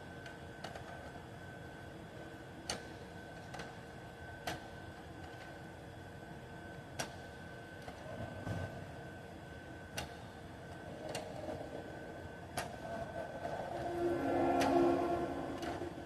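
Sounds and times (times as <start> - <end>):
faint high whine: 11.3 - 16.0.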